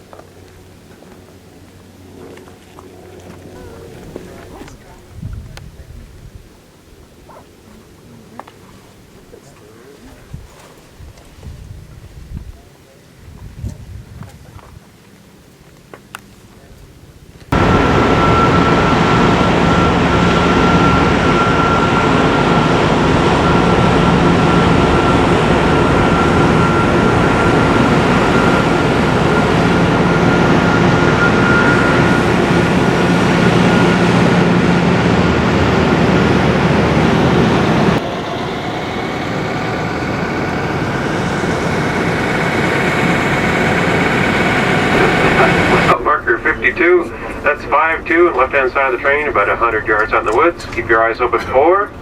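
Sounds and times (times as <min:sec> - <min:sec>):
passenger train rumbling: 0:17.5 - 0:52.0
tones rising in pitch: 0:17.6 - 0:46.0.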